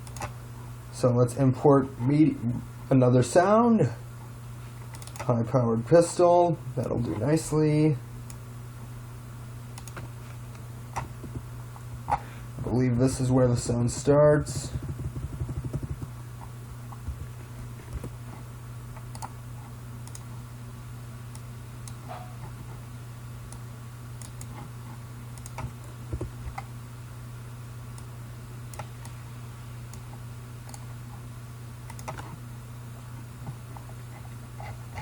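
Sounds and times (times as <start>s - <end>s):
keyboard and mouse clicks: 0.0s - 0.3s, 4.9s - 5.3s, 9.8s - 10.0s, 14.8s - 16.1s, 19.0s - 19.4s, 20.0s - 20.3s, 24.2s - 24.6s, 25.4s - 26.7s, 28.7s - 29.2s, 31.9s - 32.3s
steady low hum: 0.0s - 35.0s.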